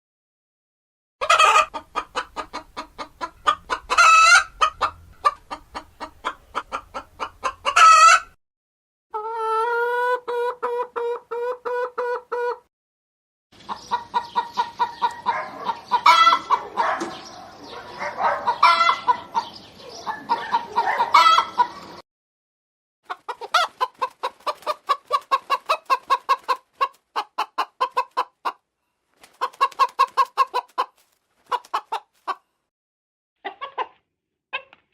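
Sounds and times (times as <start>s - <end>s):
hens cackling squawks: 1.2s - 8.4s, 9.1s - 12.7s, 13.6s - 22.0s, 23.1s - 28.6s, 29.2s - 32.4s
hens clucking: 1.2s - 8.4s, 9.1s - 12.7s, 13.6s - 22.0s, 23.1s - 28.6s, 29.2s - 32.4s, 33.4s - 34.8s.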